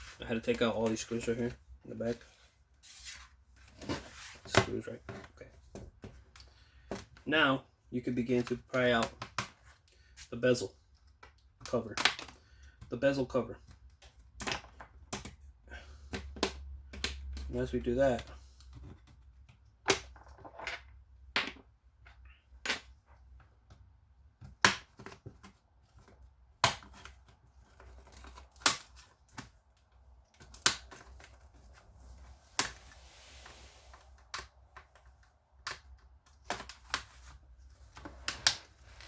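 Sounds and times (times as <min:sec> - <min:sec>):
soft rustle: 0:31.3 - 0:34.2.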